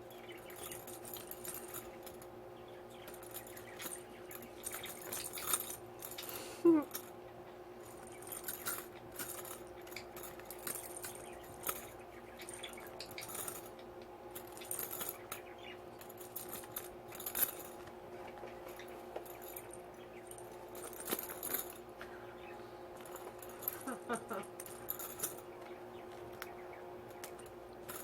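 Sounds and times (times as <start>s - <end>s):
steady low hum: 0.0s - 28.0s
guinea pigs clicking in cage: 23.6s - 28.0s.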